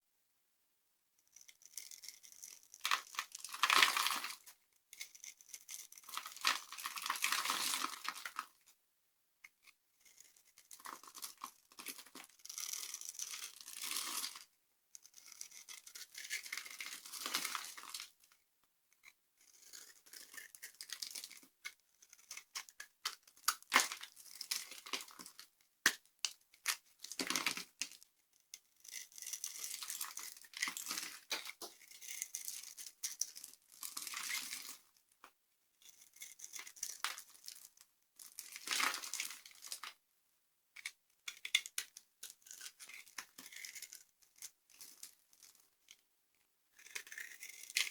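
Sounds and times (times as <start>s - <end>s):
dry soap crackling and crunching: 1.3s - 8.7s, 9.5s - 40.0s, 40.8s - 46.0s, 46.7s - 47.9s.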